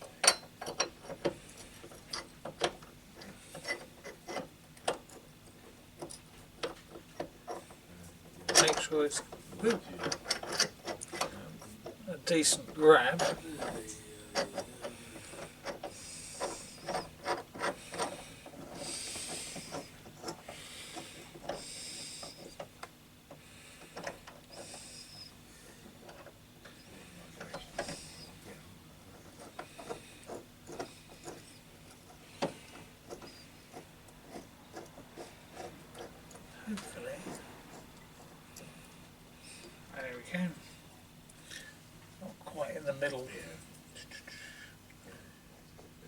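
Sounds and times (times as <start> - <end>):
metal tool clicks and knocks: 0.2 - 1.4.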